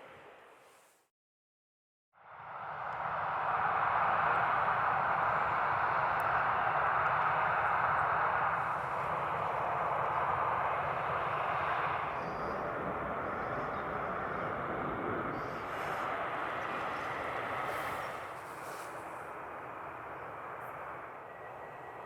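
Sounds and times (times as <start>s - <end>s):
jet engines climbing: 2.3s - 22.0s.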